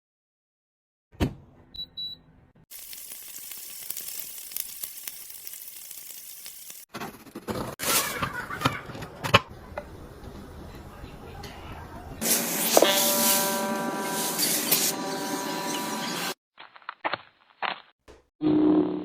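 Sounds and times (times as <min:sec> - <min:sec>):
steady crackling hiss: 0:02.7 - 0:06.8.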